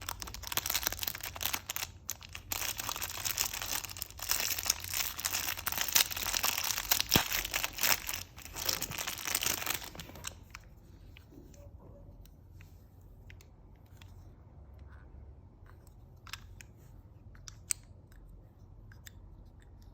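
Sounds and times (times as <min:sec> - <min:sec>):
plastic packaging crinkling: 0:00.0 - 0:10.4.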